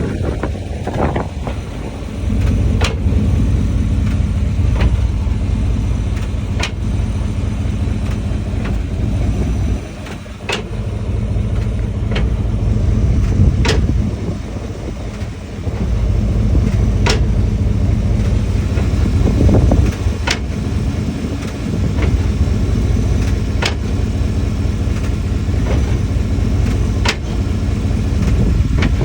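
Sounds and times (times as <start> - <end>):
truck engine rumbling: 0.0 - 29.0
sharp clunk: 4.0 - 5.2, 10.1 - 10.8, 13.2 - 14.1, 17.0 - 17.4, 23.2 - 24.0, 26.7 - 27.4.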